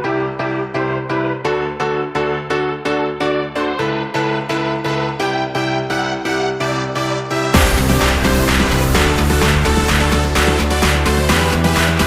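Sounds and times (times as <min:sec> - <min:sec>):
electric piano repeated chords: 0:00.0 - 0:12.0
steady bass: 0:07.5 - 0:12.0.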